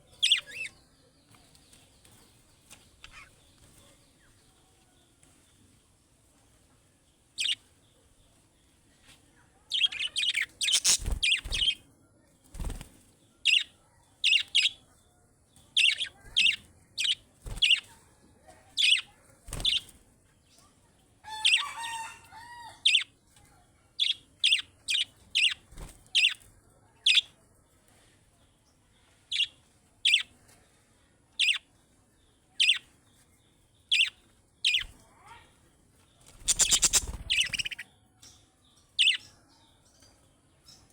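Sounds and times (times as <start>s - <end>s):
budgerigars chirping: 0.2s - 0.7s, 9.8s - 11.8s, 31.4s - 31.6s, 33.9s - 34.1s, 34.7s - 34.9s, 36.4s - 37.8s.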